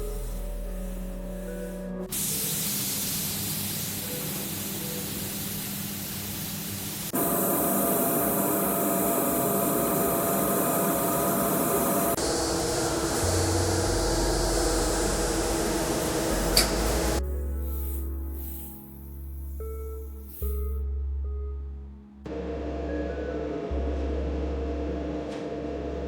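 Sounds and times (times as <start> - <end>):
steady hiss: 0.0 - 7.2
steady hum: 6.9 - 17.2.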